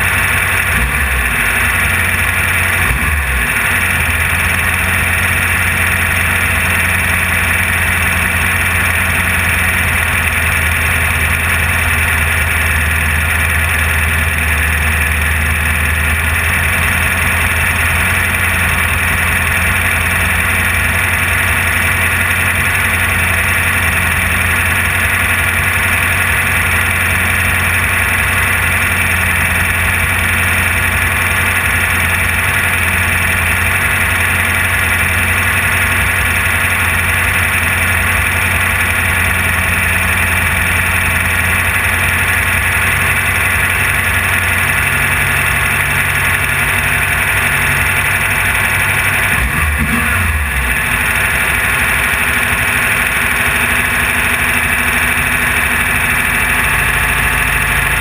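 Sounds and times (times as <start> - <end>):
race car engine running under load: 0.0 - 58.0.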